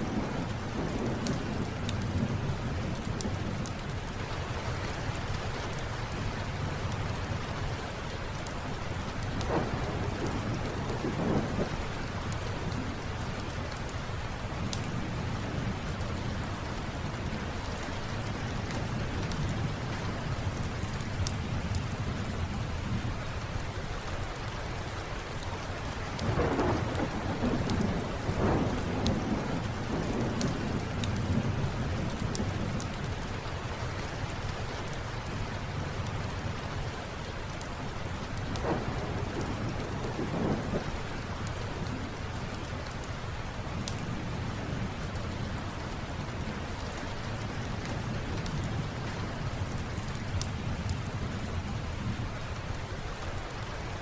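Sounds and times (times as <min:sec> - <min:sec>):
thunder rumble: 0:00.0 - 0:07.8, 0:09.1 - 0:23.2, 0:26.2 - 0:33.6, 0:38.1 - 0:52.4
wood fire crackling: 0:00.0 - 0:22.5
steady rain: 0:00.0 - 0:54.0.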